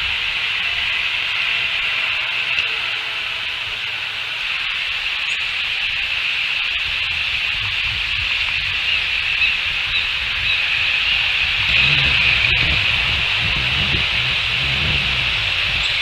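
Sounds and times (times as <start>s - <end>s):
high-pitched outdoor hiss: 0.0s - 16.0s
faint low rumble: 11.1s - 16.0s.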